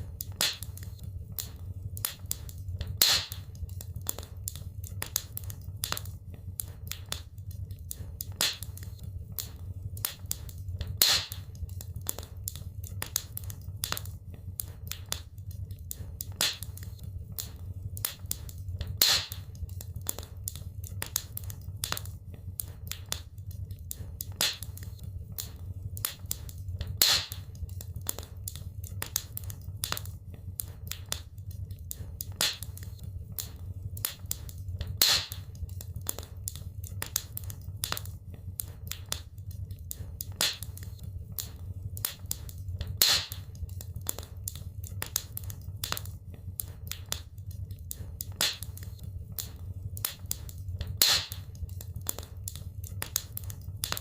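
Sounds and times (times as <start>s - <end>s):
wood fire crackling: 0.0s - 54.0s
loud pop from fire: 3.0s - 3.4s, 11.0s - 11.4s, 19.0s - 19.4s, 27.0s - 27.4s, 35.0s - 35.4s, 43.0s - 43.4s, 51.0s - 51.4s.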